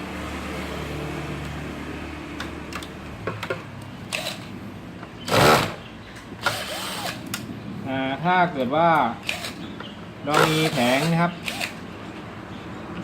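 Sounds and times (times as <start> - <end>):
power screwdriver rattling: 4.1 - 4.5, 6.4 - 7.3, 9.2 - 9.6, 10.3 - 11.8.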